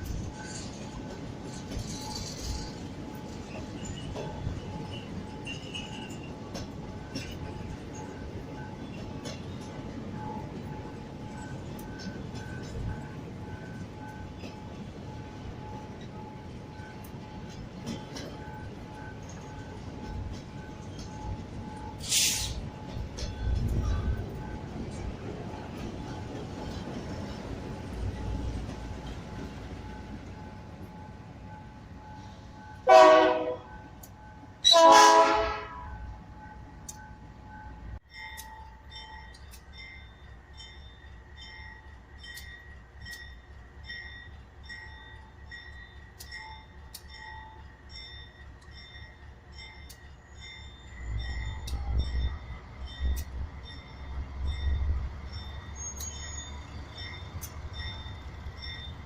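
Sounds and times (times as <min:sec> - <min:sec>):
low rumble of train: 0:00.0 - 0:59.0
train horn blasts: 0:32.8 - 0:33.7, 0:34.6 - 0:36.0.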